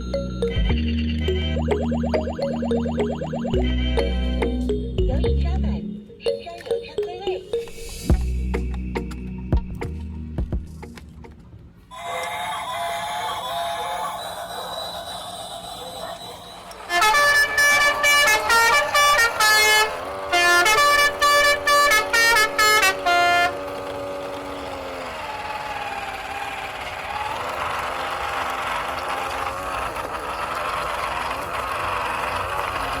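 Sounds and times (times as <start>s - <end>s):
warbling electronic sound: 0.0s - 8.2s
held electronic tone sagging: 0.0s - 9.3s
electronic horn toots: 16.6s - 24.1s.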